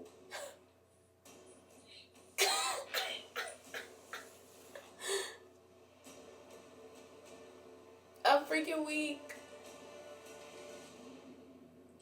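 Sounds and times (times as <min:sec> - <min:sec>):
person coughing: 0:00.3 - 0:00.6, 0:02.4 - 0:04.3.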